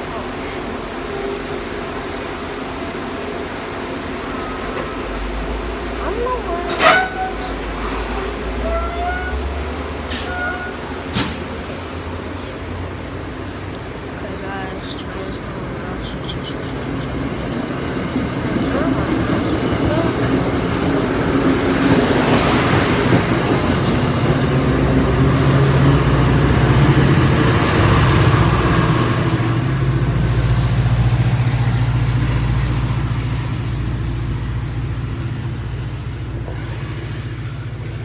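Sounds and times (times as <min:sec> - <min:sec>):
diesel train passing: 0:00.0 - 0:38.0
locomotive engine humming: 0:00.0 - 0:38.0.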